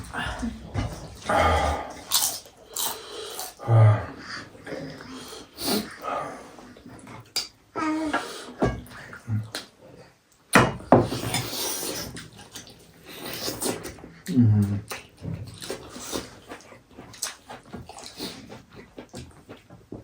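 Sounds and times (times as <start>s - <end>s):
chewing: 0.3s - 3.7s, 11.2s - 20.0s.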